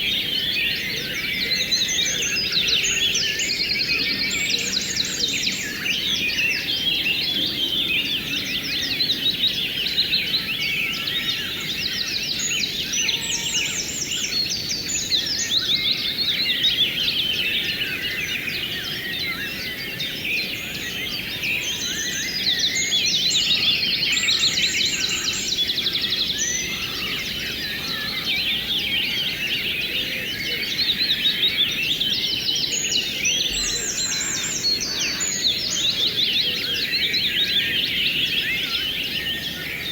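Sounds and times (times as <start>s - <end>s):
small birds chirping and trilling: 0.0s - 39.9s.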